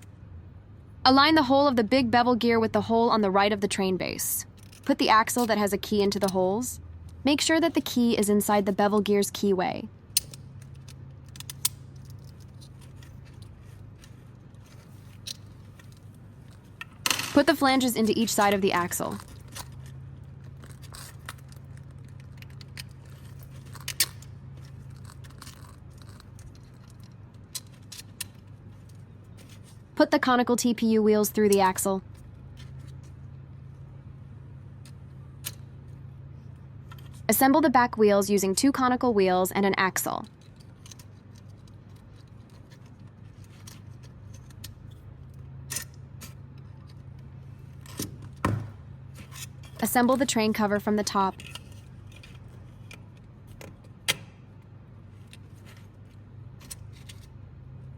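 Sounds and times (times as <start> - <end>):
steady low hum: 0.0 - 57.9
plastic parts clicking: 10.1 - 17.0.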